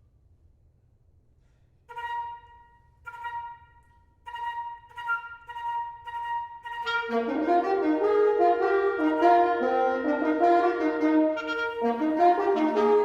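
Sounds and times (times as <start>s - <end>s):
french horn hunting call: 1.9s - 13.0s.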